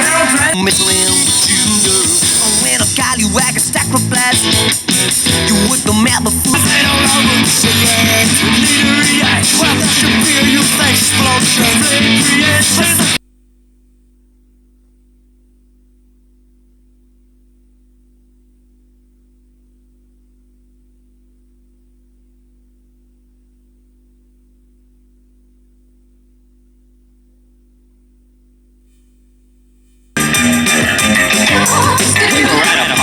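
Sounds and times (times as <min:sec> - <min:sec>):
low electrical hum: 0:13.2 - 0:30.2.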